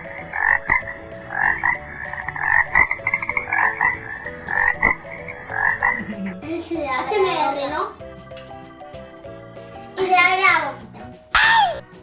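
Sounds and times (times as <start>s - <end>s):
frog croaking: 0.0s - 6.4s
faint background music: 0.0s - 12.0s.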